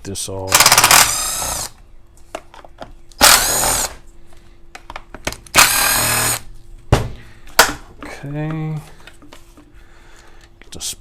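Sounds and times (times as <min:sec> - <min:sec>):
impact driver motor whine: 0:00.5 - 0:01.8, 0:03.2 - 0:04.0, 0:05.5 - 0:06.5.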